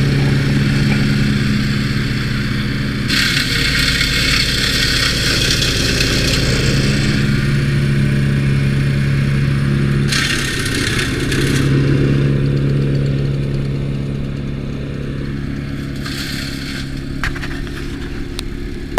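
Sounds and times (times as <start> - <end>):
harsh chipping noise: 0.0 - 7.5, 10.0 - 13.2, 15.4 - 18.9
wood chipper engine running: 0.0 - 18.9.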